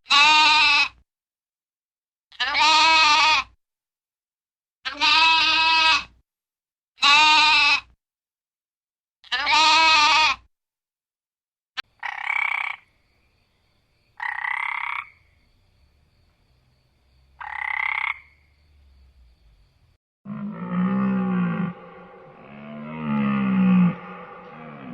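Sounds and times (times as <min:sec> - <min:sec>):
goat bleating: 0:00.1 - 0:01.0, 0:02.3 - 0:03.5, 0:04.9 - 0:06.1, 0:07.0 - 0:07.9, 0:09.2 - 0:10.4
harsh croaking animal calls: 0:11.8 - 0:12.9, 0:14.2 - 0:15.3, 0:17.4 - 0:18.4, 0:20.2 - 0:24.9.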